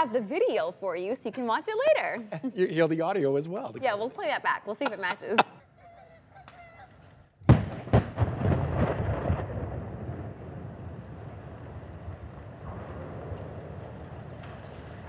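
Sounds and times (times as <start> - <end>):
underwater explosion blasts: 7.5 - 15.0
steady background noise: 10.0 - 15.0.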